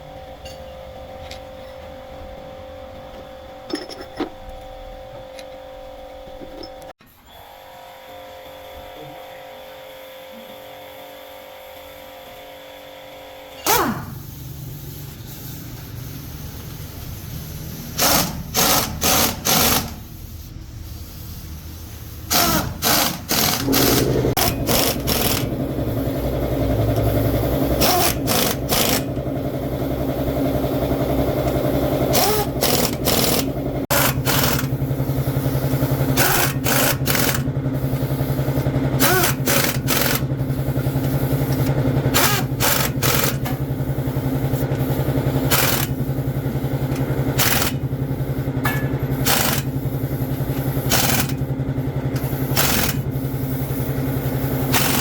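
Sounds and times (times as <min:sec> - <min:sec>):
motor running: 0:22.3 - 0:55.0.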